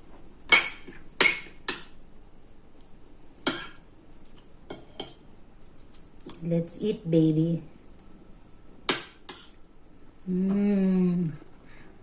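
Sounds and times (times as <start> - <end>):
cutlery clinking against dishes: 4.7 - 5.2, 8.9 - 9.6.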